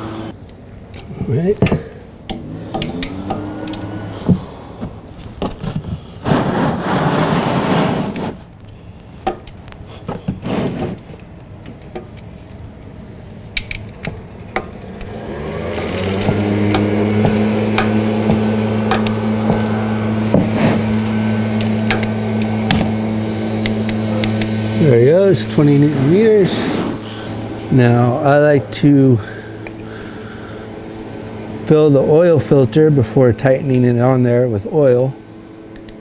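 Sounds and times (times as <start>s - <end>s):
motor humming: 0.0s - 0.4s, 1.0s - 5.6s, 14.6s - 36.0s
tools scraping: 1.0s - 8.6s, 9.2s - 12.6s, 13.7s - 27.4s.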